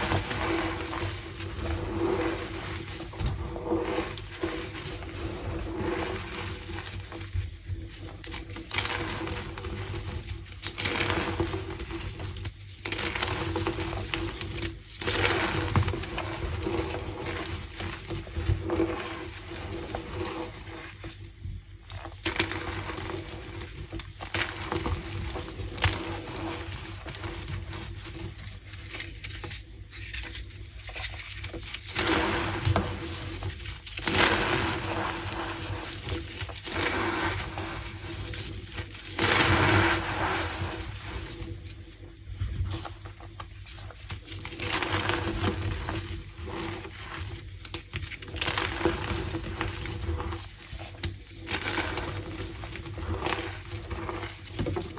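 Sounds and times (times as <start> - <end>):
chalk being crushed: 0.0 - 20.9, 28.5 - 42.0.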